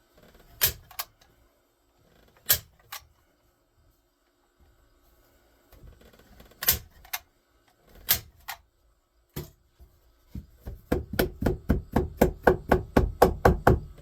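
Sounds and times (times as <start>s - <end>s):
hammer striking wood: 10.4s - 14.0s.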